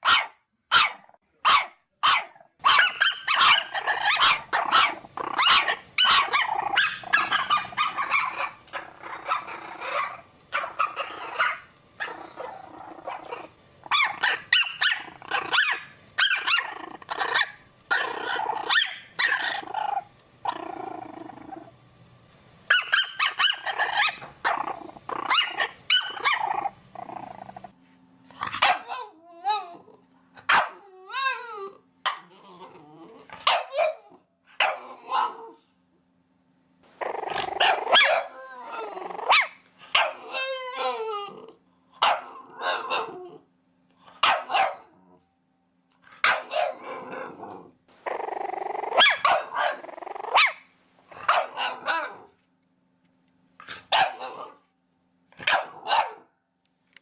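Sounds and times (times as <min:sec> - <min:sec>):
steady low hum: 0:00.0 - 0:57.0
puppies yapping: 0:00.1 - 0:18.0
puppy whines and yips: 0:28.9 - 0:30.0, 0:30.6 - 0:32.6, 0:37.9 - 0:41.5.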